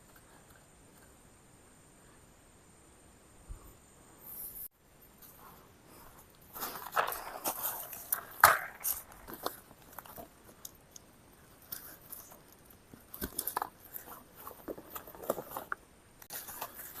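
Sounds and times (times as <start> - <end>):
camp gear crunching and rustling: 5.2 - 17.0.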